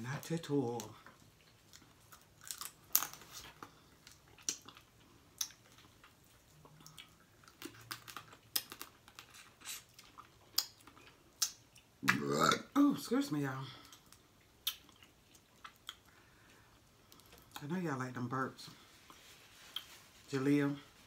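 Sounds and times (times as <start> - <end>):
chewing crunches: 0.8 - 12.3, 13.9 - 17.7
lip smacking: 13.9 - 16.2.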